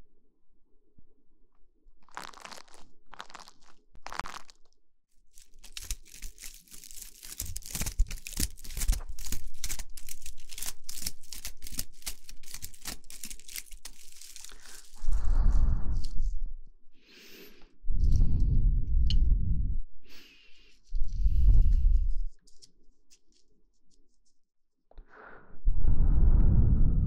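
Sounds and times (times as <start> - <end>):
crunchy crackling strokes: 2.0 - 4.7, 5.3 - 16.4
scratchy rubbing on microphone: 20.9 - 22.4.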